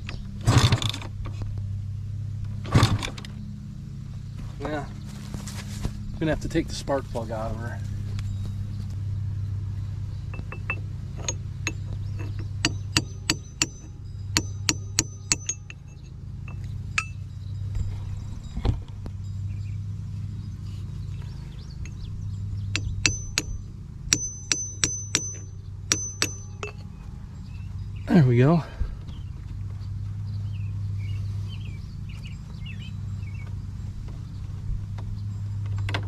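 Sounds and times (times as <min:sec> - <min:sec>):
heavy metallic knock: 0:10.3 - 0:15.8, 0:22.7 - 0:26.8.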